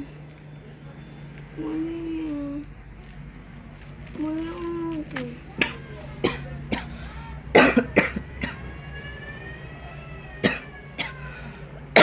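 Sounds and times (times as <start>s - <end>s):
person coughing harshly: 5.6s - 8.6s, 10.4s - 11.3s.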